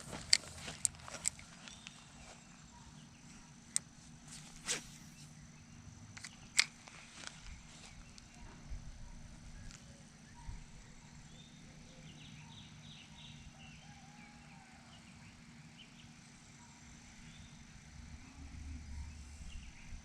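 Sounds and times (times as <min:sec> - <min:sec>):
small clicks: 0:06.2 - 0:08.4.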